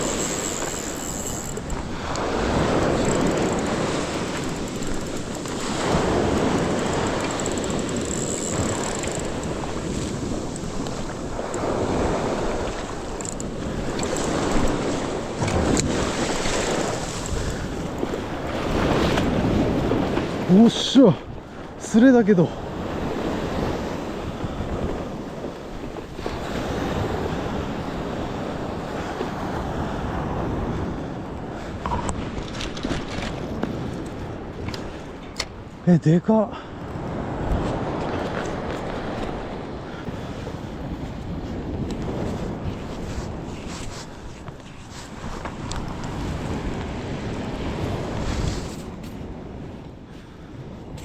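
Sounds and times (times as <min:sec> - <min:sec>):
surf breaking on beach: 0:00.0 - 0:21.2, 0:36.3 - 0:49.6
wind on microphone: 0:00.0 - 0:21.9, 0:22.6 - 0:35.8, 0:36.7 - 0:51.0.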